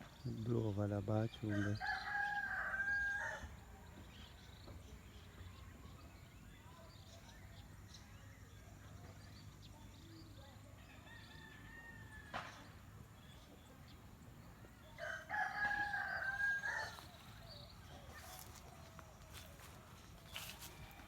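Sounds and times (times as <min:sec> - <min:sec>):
small birds calling: 0:12.5 - 0:21.0
chickens calling: 0:13.4 - 0:21.0.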